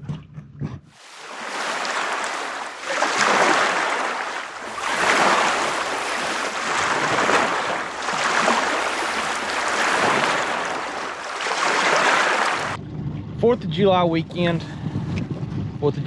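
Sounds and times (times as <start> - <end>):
water rushing and splashing: 1.0 - 12.8.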